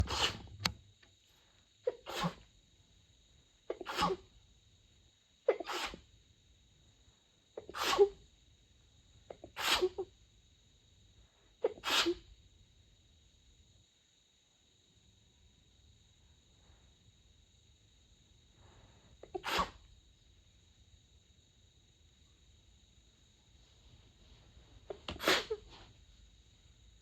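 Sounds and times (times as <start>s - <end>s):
woman sneezing stifled: 3.7s - 4.2s, 7.6s - 8.2s, 9.5s - 10.0s, 19.3s - 19.8s, 25.1s - 25.7s.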